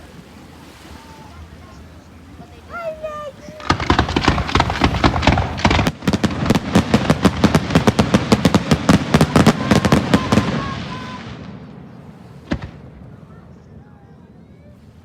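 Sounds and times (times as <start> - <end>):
fireworks bangs and crackles: 2.7 - 14.0.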